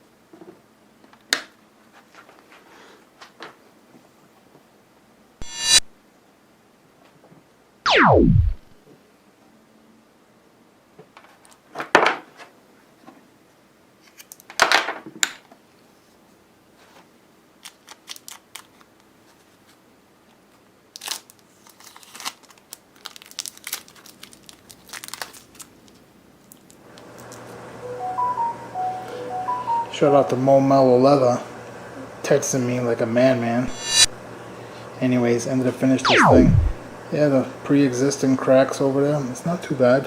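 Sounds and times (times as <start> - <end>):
whoosh falling in pitch: 5.4 - 5.9, 7.9 - 8.8, 33.6 - 34.1, 36.0 - 37.0.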